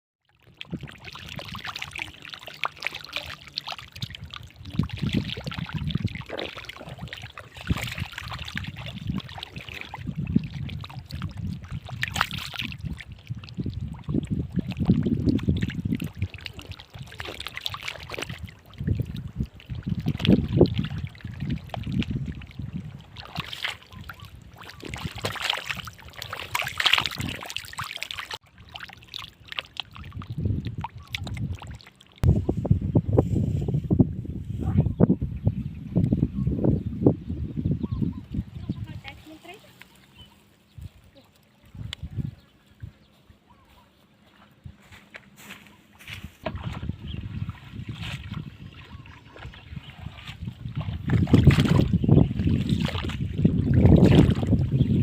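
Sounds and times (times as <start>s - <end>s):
shallow water splashing: 0.3s - 32.6s, 45.3s - 55.0s.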